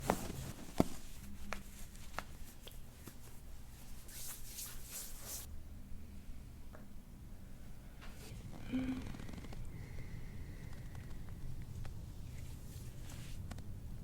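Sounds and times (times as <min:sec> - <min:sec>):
rustling: 0:00.0 - 0:05.5.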